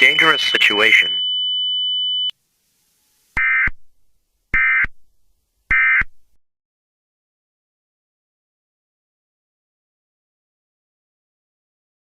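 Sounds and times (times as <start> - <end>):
steady high electronic tone: 0.0 - 1.3.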